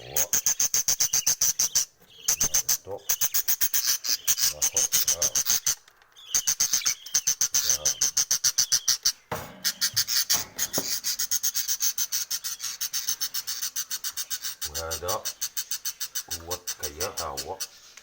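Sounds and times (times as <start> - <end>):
chicks chirping: 0.0 - 18.0
knocks on nest box: 9.3 - 11.2.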